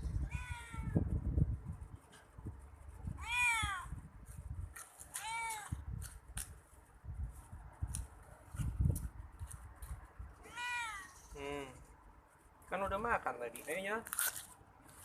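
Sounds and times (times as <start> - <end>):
cat meowing: 0.2 - 1.0, 3.2 - 3.9, 5.1 - 5.8, 10.4 - 11.3.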